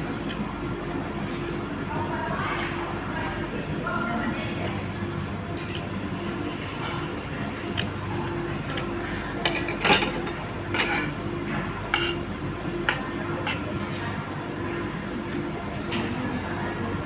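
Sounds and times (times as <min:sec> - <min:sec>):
cutlery clinking against dishes: 0:08.7 - 0:13.8.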